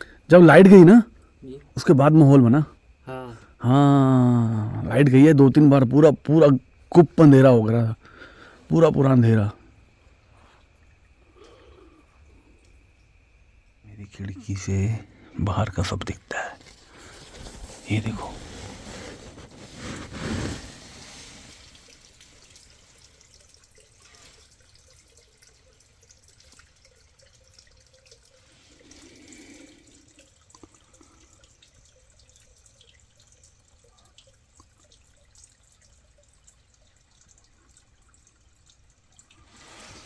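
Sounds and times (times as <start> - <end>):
faint steady hiss: 0.0 - 40.0
faint ticks: 10.1 - 13.8, 22.5 - 39.4.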